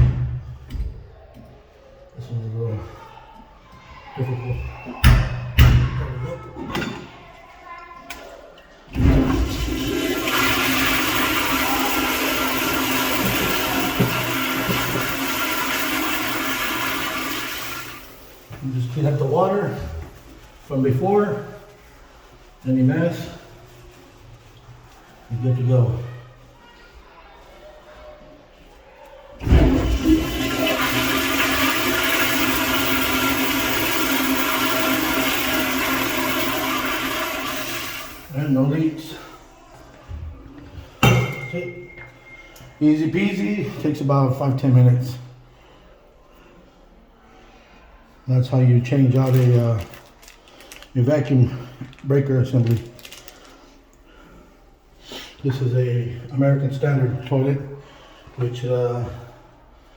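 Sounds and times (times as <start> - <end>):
toilet flushing: 8.9 - 19.7, 29.4 - 39.1.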